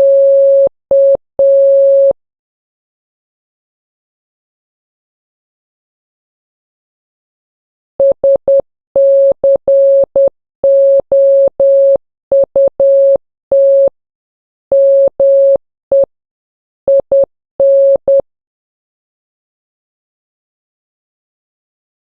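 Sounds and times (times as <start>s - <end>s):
morse code beeps: 0.0s - 2.2s, 8.0s - 13.9s, 14.7s - 16.1s, 16.9s - 18.2s.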